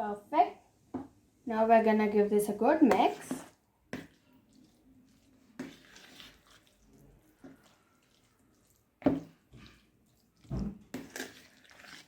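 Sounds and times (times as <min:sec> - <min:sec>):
wet squelching of stirred food: 0:02.1 - 0:12.0
utensil scraping bowl: 0:02.8 - 0:08.6, 0:10.8 - 0:12.0.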